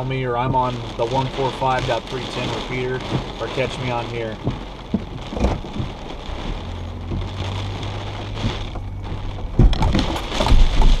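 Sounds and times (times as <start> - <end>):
knocks and rumbles: 0.0 - 11.0
rain: 0.0 - 11.0
vehicle engine humming: 0.0 - 11.0
wind: 0.0 - 11.0
thump: 4.9 - 5.9, 9.6 - 10.9.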